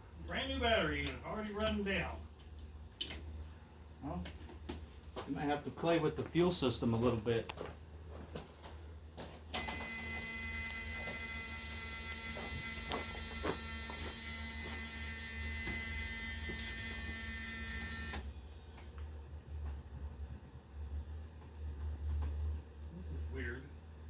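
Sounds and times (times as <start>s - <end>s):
small electric motor whining: 9.6s - 18.3s.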